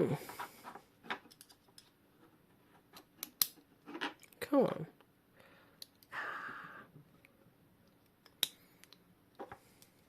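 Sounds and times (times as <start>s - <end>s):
clicks and taps of metal parts: 7.9s - 10.0s.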